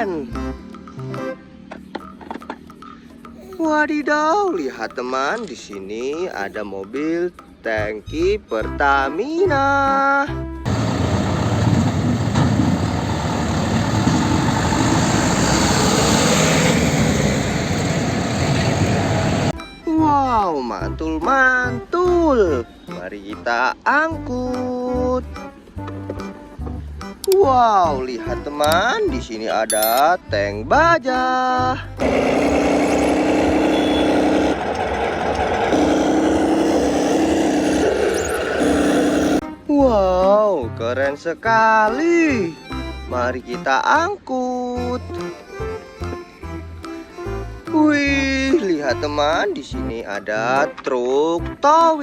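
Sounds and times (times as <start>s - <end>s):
heavy truck engine running: 10.7s - 19.6s, 32.0s - 39.4s
toy tank engine drone: 32.0s - 39.4s.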